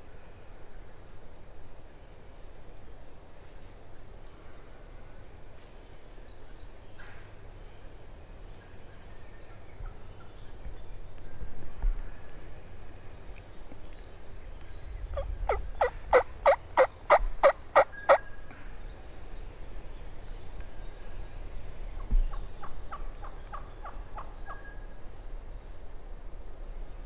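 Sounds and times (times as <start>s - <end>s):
wild turkey yelping: 15.2s - 18.2s.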